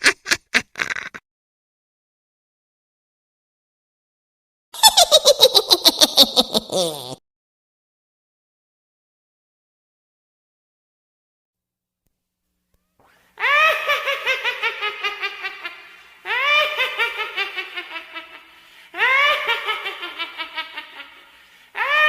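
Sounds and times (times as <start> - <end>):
witch cackling laugh: 0.0 - 1.2, 4.8 - 7.2, 13.4 - 22.0.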